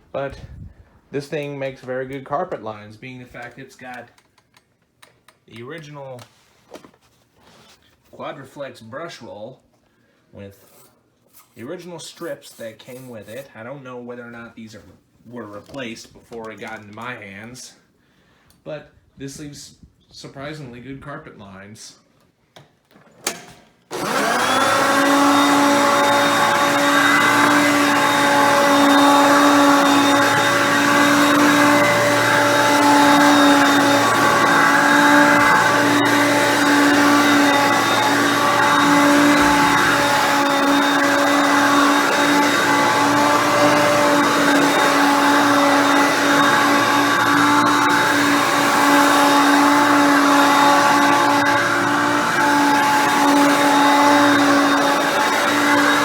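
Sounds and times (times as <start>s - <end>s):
vacuum cleaner motor hum: 23.9s - 56.0s.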